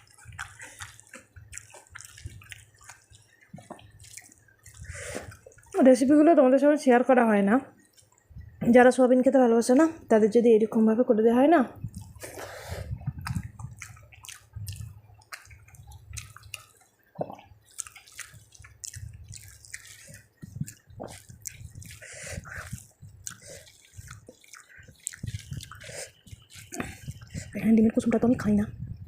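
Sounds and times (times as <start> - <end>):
person chewing with lip smacks: 0.0 - 5.8, 11.8 - 27.6.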